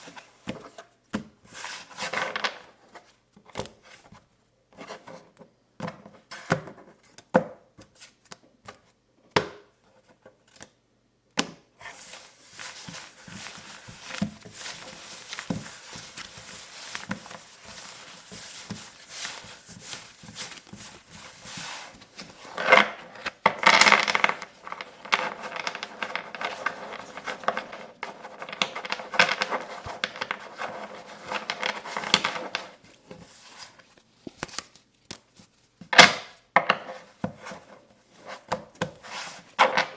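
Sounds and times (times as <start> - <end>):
playing cards tapping and flicking: 11.4 - 27.8, 28.4 - 32.7, 34.2 - 35.4
playing cards rustling: 11.8 - 35.8.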